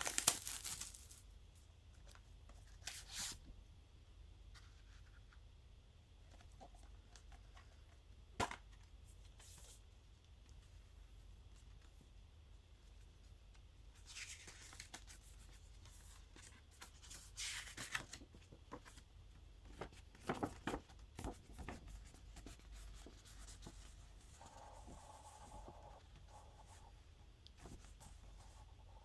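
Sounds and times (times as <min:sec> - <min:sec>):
packaging rustling and scraping: 0:00.0 - 0:01.2.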